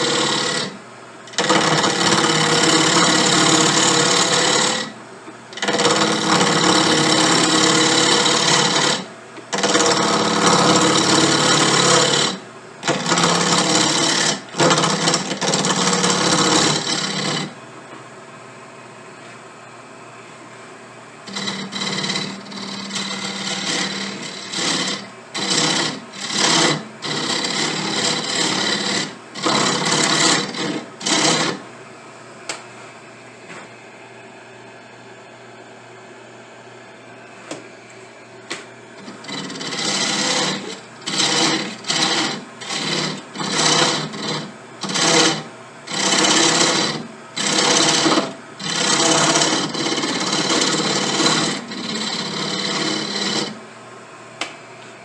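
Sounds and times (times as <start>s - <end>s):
cutting tool scraping wood: 0.0s - 5.0s, 5.6s - 17.6s, 21.3s - 31.6s, 39.0s - 53.6s
lathe humming: 0.0s - 17.6s, 21.2s - 31.7s, 38.5s - 53.6s.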